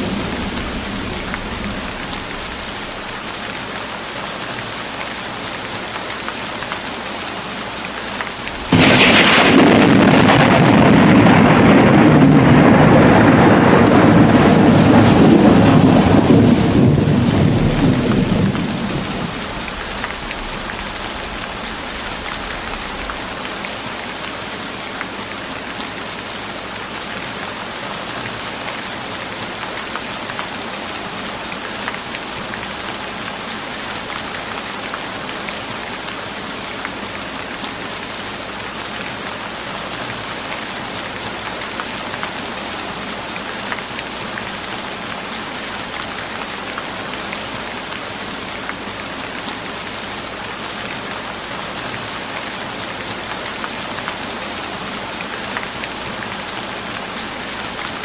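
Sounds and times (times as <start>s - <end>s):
thunder rumble: 0.0s - 3.6s, 8.4s - 23.5s
steady rain falling: 0.0s - 58.0s.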